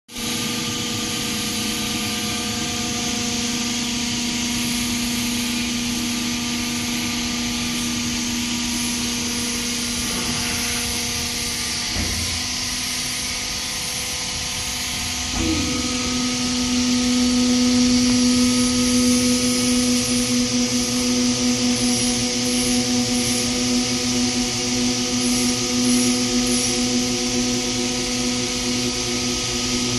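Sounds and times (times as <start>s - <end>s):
industrial machinery humming: 0.2s - 29.9s
blower hiss: 6.9s - 29.9s.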